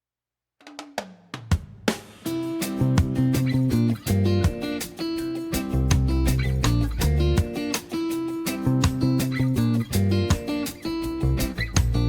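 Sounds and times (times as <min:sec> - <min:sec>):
steady drum beat: 0:00.6 - 0:12.0
guitar: 0:01.9 - 0:12.0
bass line: 0:05.8 - 0:07.4, 0:11.1 - 0:12.0.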